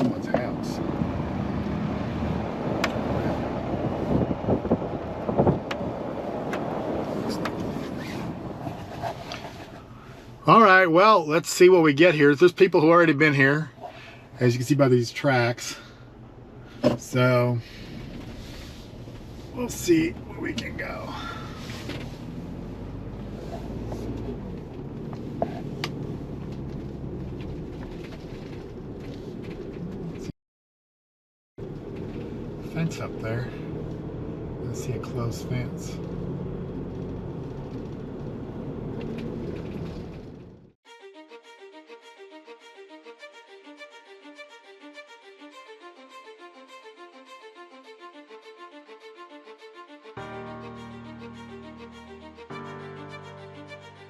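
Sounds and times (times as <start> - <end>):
vehicle running: 0.0 - 10.3, 15.6 - 30.3, 31.6 - 40.8, 46.5 - 54.0.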